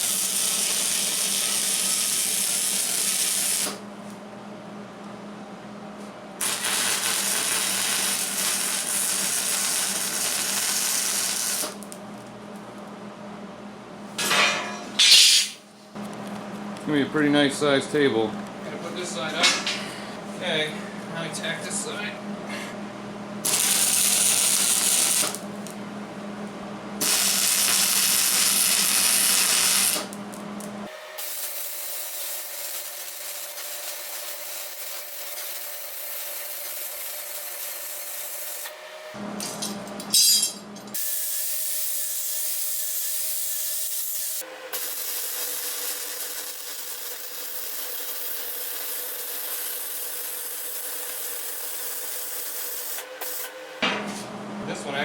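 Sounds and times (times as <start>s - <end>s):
welding arc crackling: 0.0s - 3.8s, 6.4s - 12.3s, 23.4s - 25.8s, 27.0s - 38.7s, 44.8s - 53.5s.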